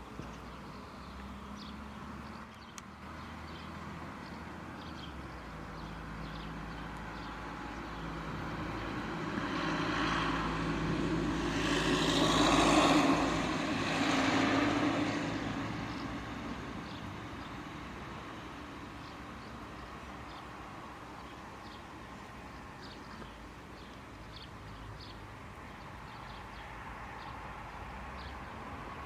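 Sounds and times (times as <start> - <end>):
vehicle passing by: 1.0 - 20.4.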